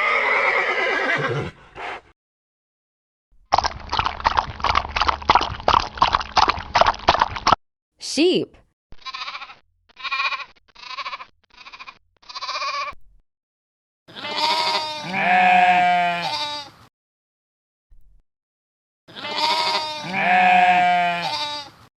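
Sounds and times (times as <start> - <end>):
sheep bleating: 9.0 - 13.0, 14.1 - 16.8, 19.1 - 21.8.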